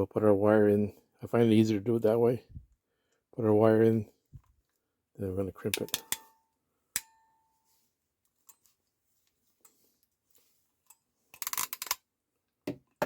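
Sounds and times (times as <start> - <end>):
crimping pliers ratchet clicks: 11.4 - 12.0.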